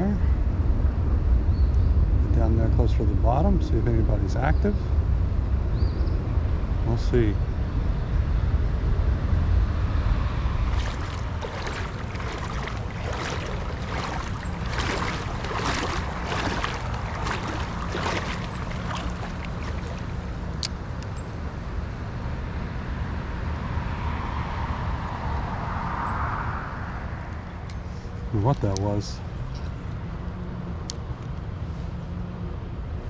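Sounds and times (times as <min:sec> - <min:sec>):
wind rumbling on microphone: 0:07.6 - 0:20.9
creek water splashing: 0:10.6 - 0:20.6.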